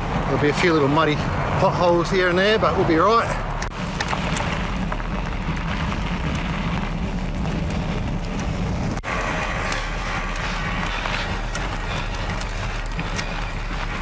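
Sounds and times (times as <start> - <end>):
low rumble through handlebars: 0.0 - 14.0
tyre roar on dirt: 0.0 - 14.0
small rattles and ticks: 3.6 - 14.0.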